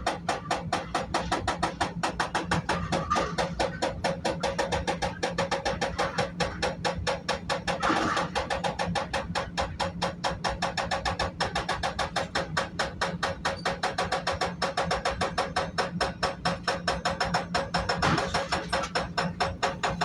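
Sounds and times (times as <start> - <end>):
hydraulic hammer pounding concrete: 0.0 - 20.0.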